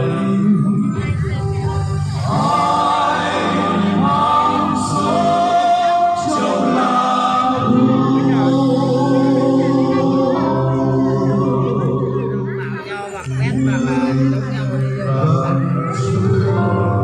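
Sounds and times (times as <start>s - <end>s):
musical accompaniment: 0.0s - 17.0s
choir singing a carol: 2.1s - 12.5s.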